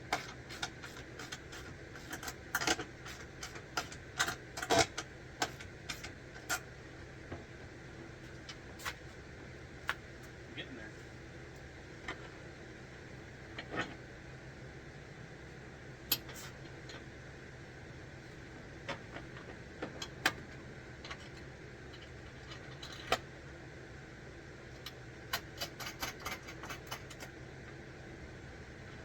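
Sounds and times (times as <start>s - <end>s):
steady low hum: 0.0s - 29.0s
tools clicking and tapping: 24.8s - 27.3s.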